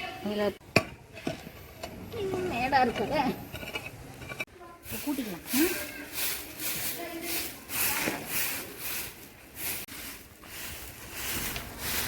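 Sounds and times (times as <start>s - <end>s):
broom sweeping ground: 4.8s - 12.0s.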